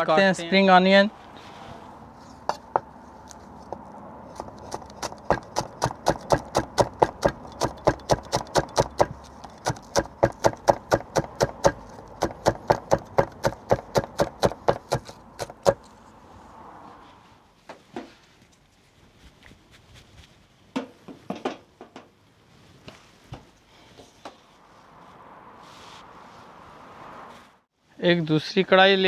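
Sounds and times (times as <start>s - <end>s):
knife chopping on cutting board: 4.4s - 15.8s.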